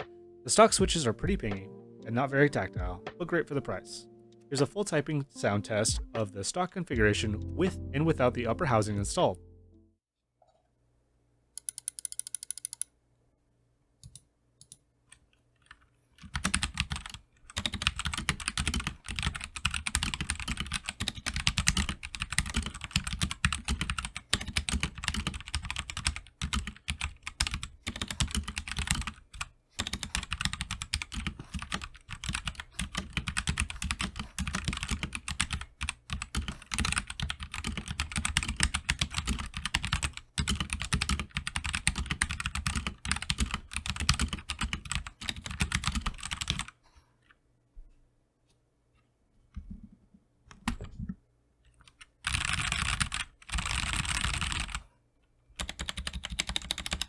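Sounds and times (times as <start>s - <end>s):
mechanical keyboard typing: 11.6s - 12.9s, 15.7s - 46.8s, 52.0s - 54.8s, 55.6s - 57.0s.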